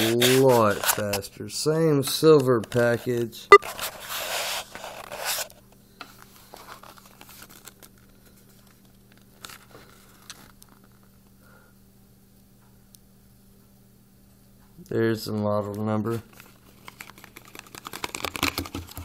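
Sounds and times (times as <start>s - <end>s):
wrapping crinkling: 6.2s - 11.1s, 16.3s - 19.0s
package being torn open: 16.7s - 19.0s.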